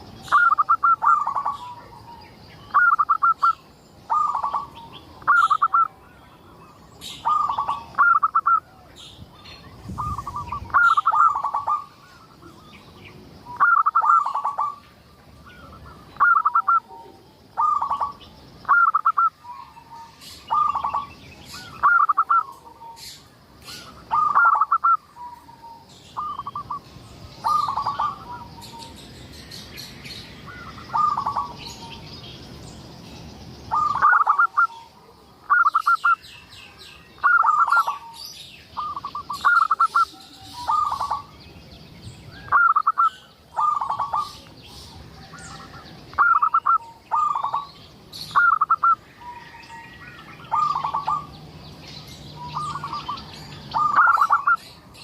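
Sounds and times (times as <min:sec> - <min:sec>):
dove cooing: 0:00.0 - 0:06.0, 0:07.2 - 0:08.9, 0:09.9 - 0:12.7, 0:13.5 - 0:14.8, 0:15.5 - 0:23.1, 0:23.7 - 0:26.8, 0:27.4 - 0:29.0, 0:30.5 - 0:32.0, 0:33.7 - 0:36.2, 0:37.2 - 0:38.2, 0:38.8 - 0:41.3, 0:42.4 - 0:47.7, 0:48.3 - 0:51.4, 0:52.4 - 0:54.6
small birds chirping: 0:00.0 - 0:55.0.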